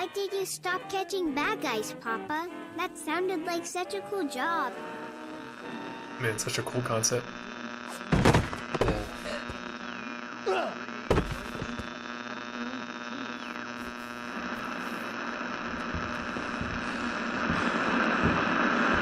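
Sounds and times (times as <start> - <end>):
electrical hum: 4.3 - 19.0
hiss: 16.0 - 19.0.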